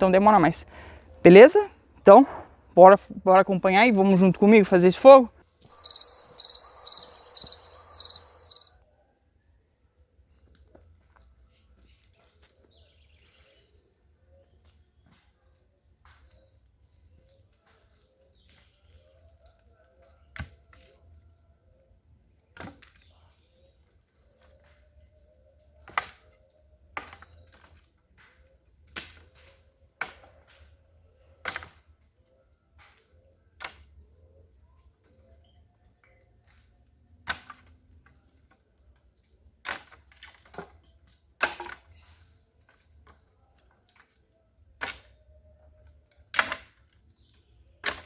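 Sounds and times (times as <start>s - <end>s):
dry twigs cracking: 5.6s - 8.7s.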